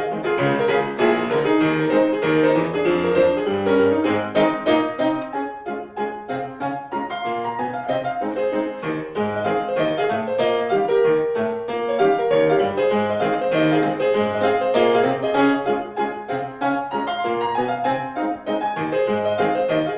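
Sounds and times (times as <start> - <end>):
solo piano music: 0.0 - 19.9.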